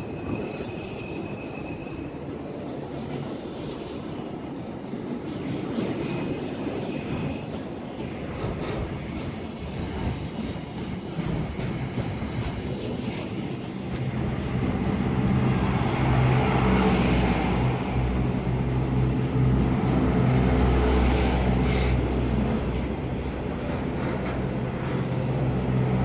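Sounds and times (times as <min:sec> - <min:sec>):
wheels clicking over rail joints: 0:07.5 - 0:15.3, 0:23.0 - 0:26.0
low diesel engine drone: 0:14.0 - 0:26.0.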